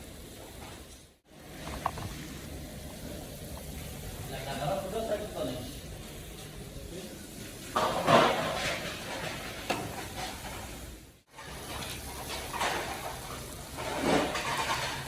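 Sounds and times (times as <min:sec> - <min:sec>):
food sizzling in a pan: 0:00.0 - 0:15.0
stirring and scraping in a pan: 0:07.2 - 0:15.0.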